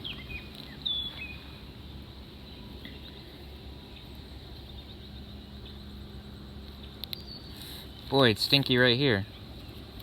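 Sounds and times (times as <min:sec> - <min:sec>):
faint bird chirps: 0:00.0 - 0:01.7, 0:02.4 - 0:08.4
low steady rumble: 0:00.0 - 0:10.0.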